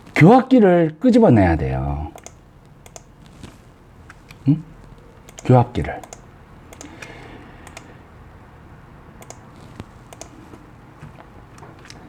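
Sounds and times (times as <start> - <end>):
computer mouse clicks: 2.1 - 8.0, 9.2 - 10.6.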